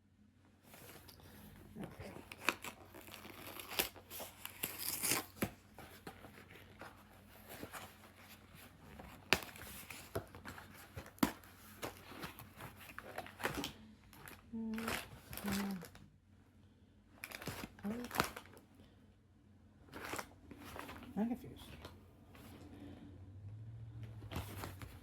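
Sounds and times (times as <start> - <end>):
cardboard box tearing: 2.1 - 8.3
packaging snapping: 9.1 - 16.0.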